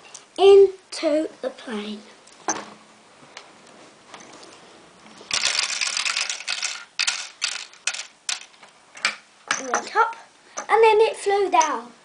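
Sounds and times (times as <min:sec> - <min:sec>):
plastic pieces rattling and clicking: 0:05.3 - 0:09.9.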